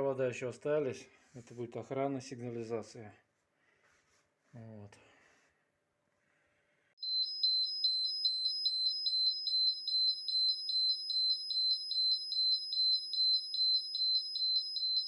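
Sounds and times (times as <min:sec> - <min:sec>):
fire alarm beeping: 0:07.0 - 0:15.0.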